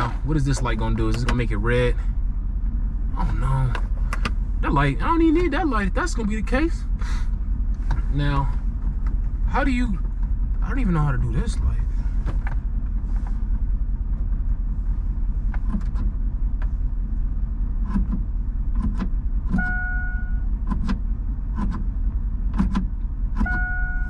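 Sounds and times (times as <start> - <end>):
steady low rumble: 0.0 - 24.0
electronic warning chime: 19.6 - 20.4, 23.5 - 24.0.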